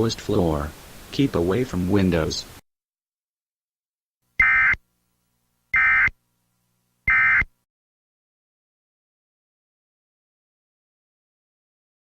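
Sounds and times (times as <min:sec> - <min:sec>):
digital data tone bursts: 0:04.4 - 0:04.8, 0:05.8 - 0:06.2, 0:07.1 - 0:07.5.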